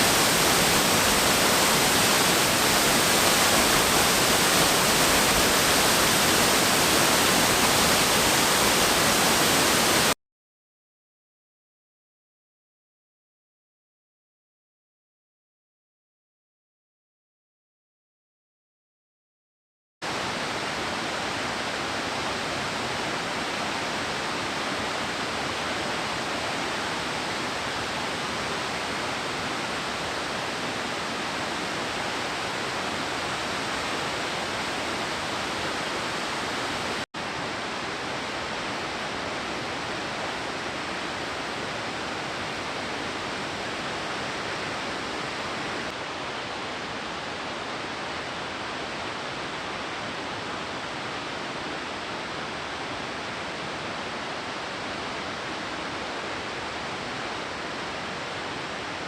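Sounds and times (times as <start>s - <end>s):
waterfall rushing: 0.0s - 10.2s.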